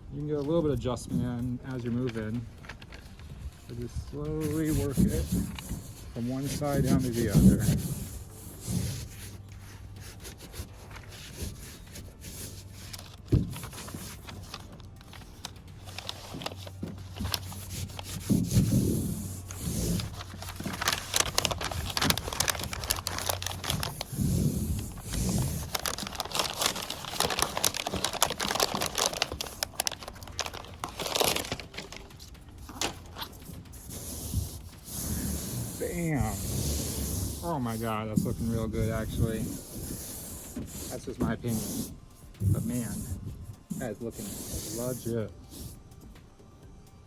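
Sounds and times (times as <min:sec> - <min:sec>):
backing crinkling as peeled: 0:00.1 - 0:45.9
hands rubbing pad on metal: 0:03.7 - 0:14.7, 0:16.3 - 0:29.7, 0:32.7 - 0:45.8
dull thumps: 0:13.2 - 0:14.8.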